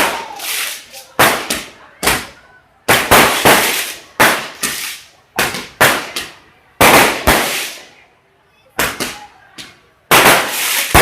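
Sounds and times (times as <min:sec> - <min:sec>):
loud sharp bangs: 0:00.0 - 0:07.9, 0:10.1 - 0:11.0.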